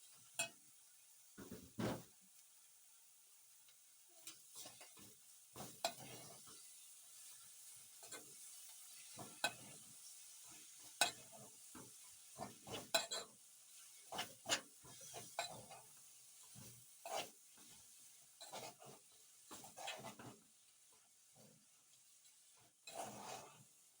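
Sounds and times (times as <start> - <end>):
frying sizzle: 0.0 - 24.0
spoon scraping cooking pot: 5.6 - 6.5, 12.4 - 13.3, 14.1 - 16.0, 16.6 - 17.7, 18.4 - 20.4, 22.8 - 23.6.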